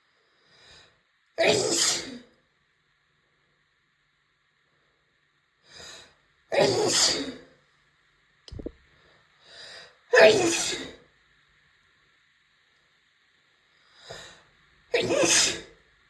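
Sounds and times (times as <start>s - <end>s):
woman sneezing: 1.4s - 2.2s, 6.6s - 7.4s, 10.1s - 11.0s, 15.0s - 15.7s
low thump: 8.5s - 8.8s.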